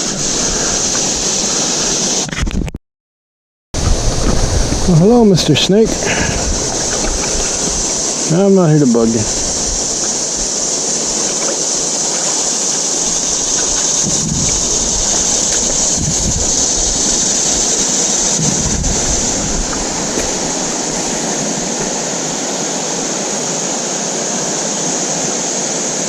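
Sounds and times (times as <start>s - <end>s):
river water rushing: 0.0s - 2.3s, 3.8s - 26.0s
wind rumble on microphone: 0.0s - 2.8s, 3.8s - 23.5s.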